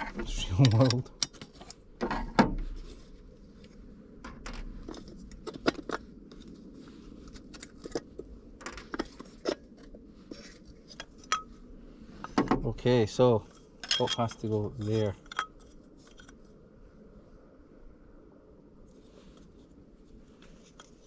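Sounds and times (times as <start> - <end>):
metal parts clicking and scraping: 0.0 - 2.3, 13.4 - 16.4.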